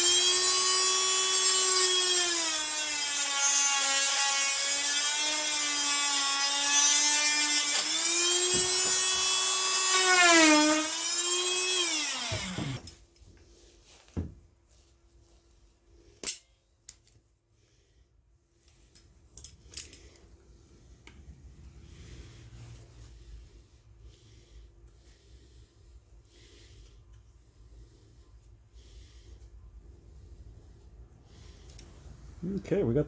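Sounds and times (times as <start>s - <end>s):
rotary tool grinding plastic: 0.0s - 13.0s.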